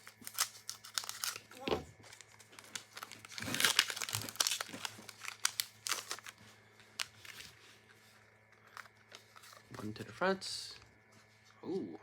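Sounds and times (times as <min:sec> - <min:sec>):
foil wrapper crinkling: 0:00.0 - 0:07.6.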